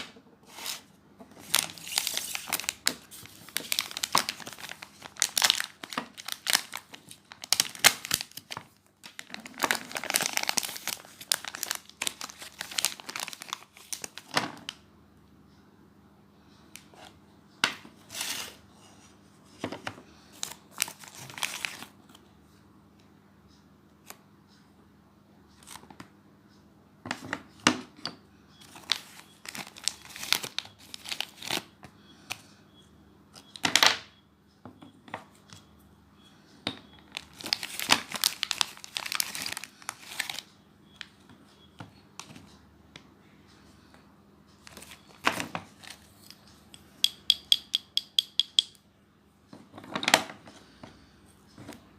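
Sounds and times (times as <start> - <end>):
packaging crinkling and tearing: 1.4 - 14.3, 20.4 - 21.9, 28.7 - 31.7, 37.1 - 40.5.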